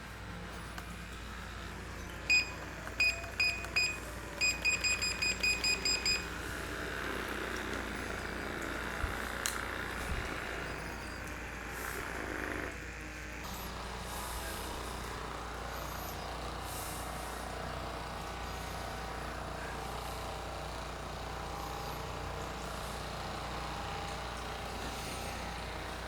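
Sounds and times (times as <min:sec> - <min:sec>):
electronic beeps: 0:02.3 - 0:06.3.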